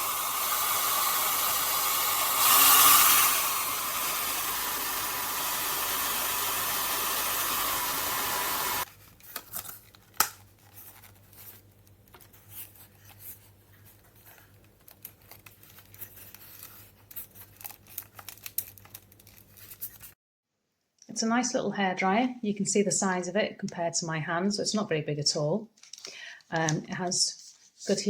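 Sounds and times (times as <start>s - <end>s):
hair dryer blowing: 0.0s - 8.9s.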